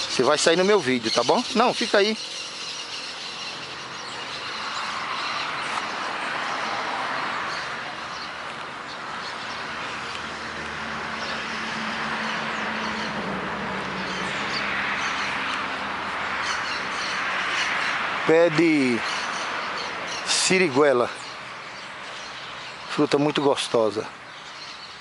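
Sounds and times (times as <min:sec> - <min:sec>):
bird chirps: 0:00.0 - 0:06.7, 0:18.7 - 0:25.0
city traffic passing: 0:00.0 - 0:25.0.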